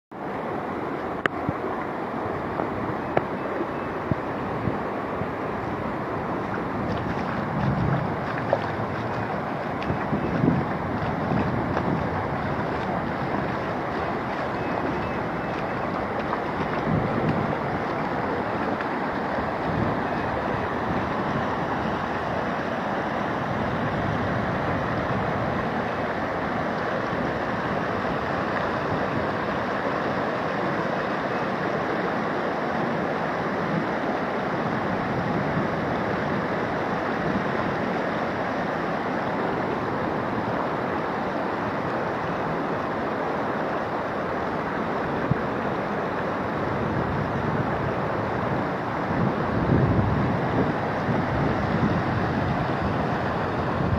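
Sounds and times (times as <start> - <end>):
floodwater rushing: 0.1 - 53.9
wind buffeting microphone: 1.1 - 31.9, 33.5 - 53.9.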